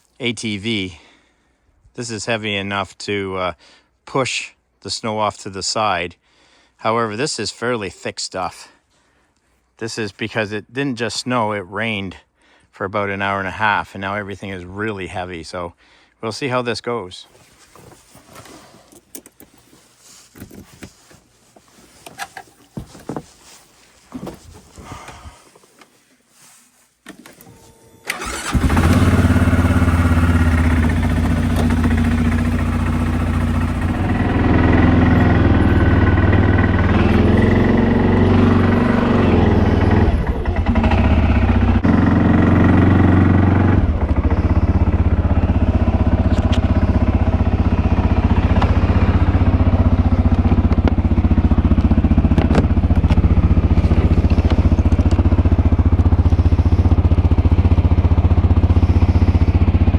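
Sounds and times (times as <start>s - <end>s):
atv engine running: 28.1s - 59.9s.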